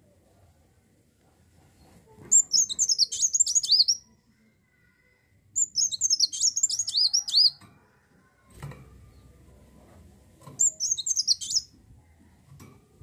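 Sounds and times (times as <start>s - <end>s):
bird twittering song: 2.3s - 4.1s, 5.6s - 7.6s, 10.6s - 11.7s.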